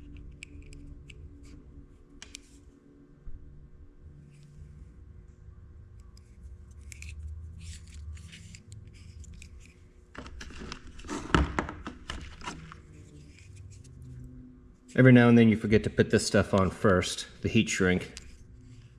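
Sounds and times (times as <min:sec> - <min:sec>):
rustling and handling: 0:06.0 - 0:15.0.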